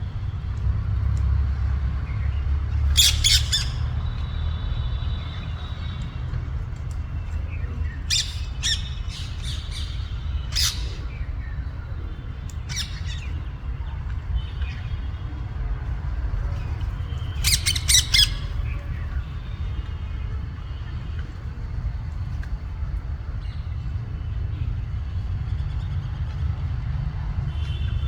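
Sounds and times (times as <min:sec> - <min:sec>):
parrots squawking: 0:02.9 - 0:03.9, 0:08.1 - 0:11.0, 0:12.7 - 0:13.3, 0:17.3 - 0:18.6.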